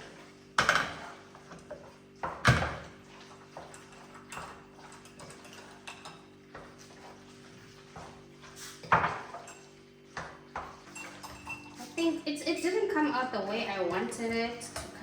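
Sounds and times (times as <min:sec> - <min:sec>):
utensil scraping against pot: 0:03.1 - 0:12.2.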